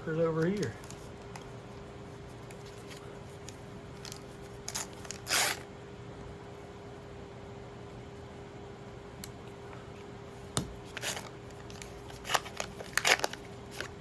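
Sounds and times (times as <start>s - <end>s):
faint steady hum: 0.0s - 14.0s
cards ticking and rustling: 0.3s - 1.5s, 11.0s - 14.0s.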